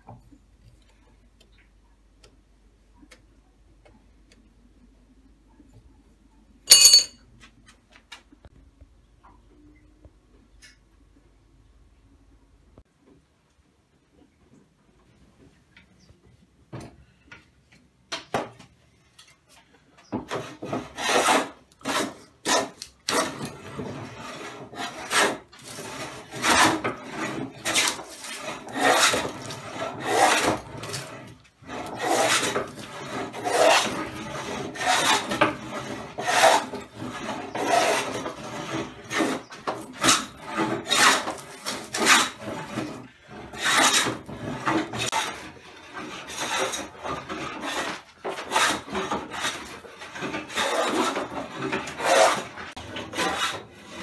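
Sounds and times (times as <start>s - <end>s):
hand rasp on wood: 20.3s - 54.0s.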